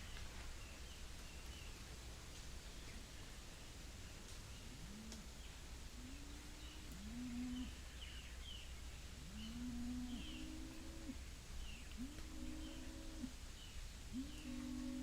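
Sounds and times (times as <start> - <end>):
animals hooting calls: 12.0 - 13.4, 14.1 - 15.0.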